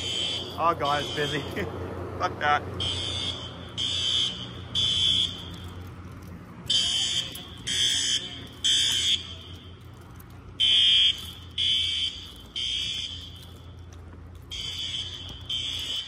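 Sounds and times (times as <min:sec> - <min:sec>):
fire alarm blasts: 0:00.0 - 0:06.0, 0:06.6 - 0:16.0.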